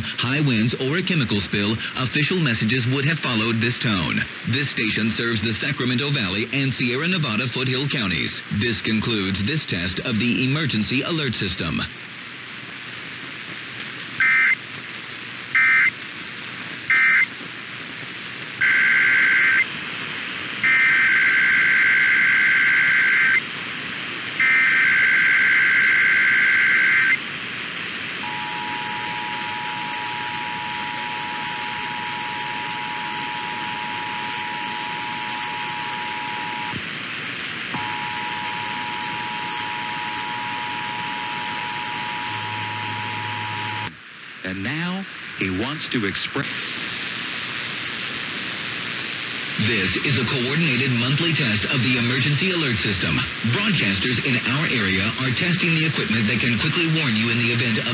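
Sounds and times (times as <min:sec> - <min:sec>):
radio hiss: 0:00.0 - 0:57.9
data bursts: 0:14.2 - 0:14.6, 0:15.5 - 0:15.9, 0:16.9 - 0:17.3, 0:18.6 - 0:19.7, 0:20.6 - 0:23.5, 0:24.4 - 0:27.2, 0:28.2 - 0:36.8, 0:37.8 - 0:43.9
two-tone data squawks: 0:14.2 - 0:14.6, 0:15.6 - 0:15.9, 0:16.9 - 0:17.3, 0:18.6 - 0:19.7, 0:20.6 - 0:23.4, 0:24.4 - 0:27.2, 0:28.2 - 0:36.8, 0:37.8 - 0:43.9.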